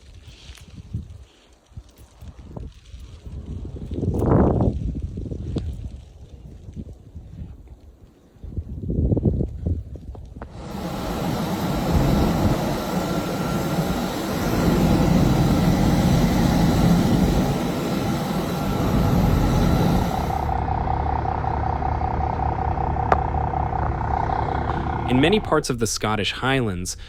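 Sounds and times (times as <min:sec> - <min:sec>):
road noise: 0:10.4 - 0:25.7
large vehicle engine rumble: 0:10.4 - 0:25.8.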